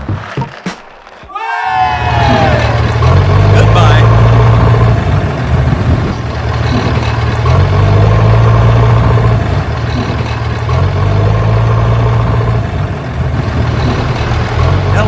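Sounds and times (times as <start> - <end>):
tractor engine hum: 0.0 - 15.0.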